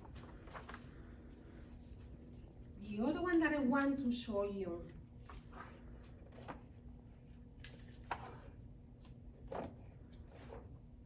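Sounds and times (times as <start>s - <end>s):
book pages turning: 0.0s - 1.0s, 5.2s - 6.8s, 7.5s - 10.8s
faint steady hum: 0.0s - 11.0s.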